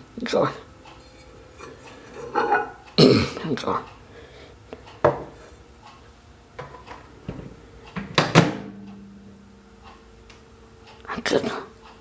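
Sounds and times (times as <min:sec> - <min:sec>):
steady low hum: 0:00.0 - 0:12.0
microwave door shutting thud: 0:07.3 - 0:08.8.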